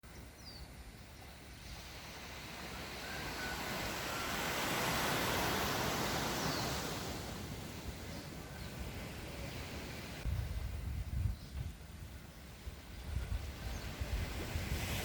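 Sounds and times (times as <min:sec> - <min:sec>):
sea wave washing on shore: 0:01.4 - 0:08.1.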